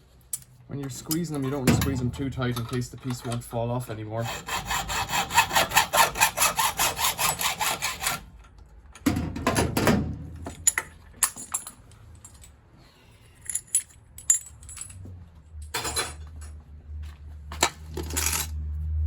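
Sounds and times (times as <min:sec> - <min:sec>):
metal parts clinking: 0:10.5 - 0:12.6, 0:13.3 - 0:16.6, 0:17.5 - 0:18.6.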